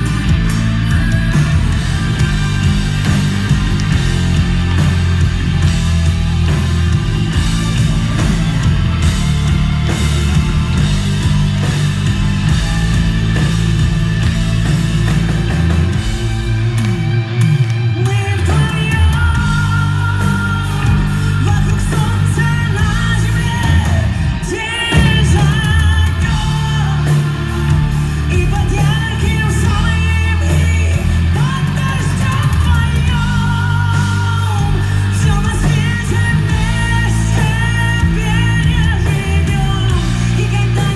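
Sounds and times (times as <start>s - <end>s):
high melodic line: 0.0s - 18.2s
live rock band playing: 0.0s - 40.9s
person singing: 16.7s - 40.9s.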